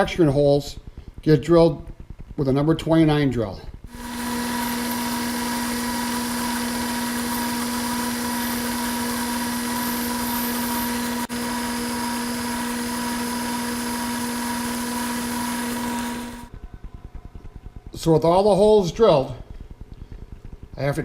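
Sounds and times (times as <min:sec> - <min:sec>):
milling machine humming: 0:03.9 - 0:17.4.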